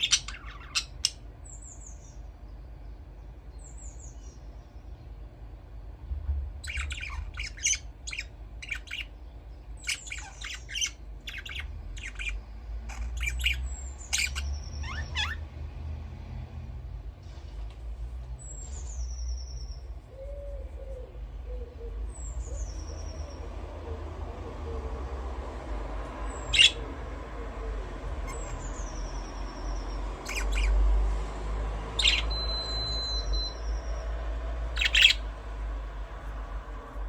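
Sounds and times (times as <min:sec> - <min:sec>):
budgerigar sharp chirps: 0:00.0 - 0:01.2, 0:06.6 - 0:09.1, 0:09.8 - 0:15.4, 0:26.5 - 0:26.8, 0:28.3 - 0:30.8, 0:32.0 - 0:34.0, 0:34.7 - 0:35.2
steady low hum: 0:00.0 - 0:32.6.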